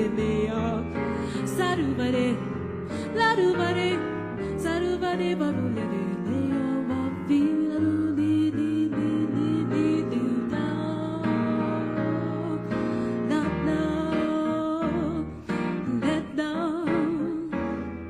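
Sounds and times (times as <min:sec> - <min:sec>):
piano accompaniment: 0:00.0 - 0:18.0.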